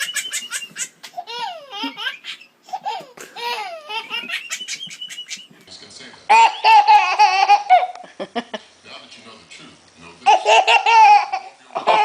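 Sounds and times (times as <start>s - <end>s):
baby laughing and squealing: 0.0s - 5.5s, 6.3s - 7.9s, 10.3s - 12.0s.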